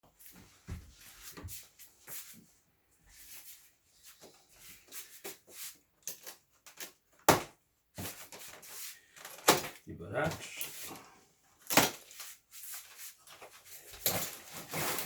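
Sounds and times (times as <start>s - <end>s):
cardboard scraping and rustling: 11.7s - 15.0s.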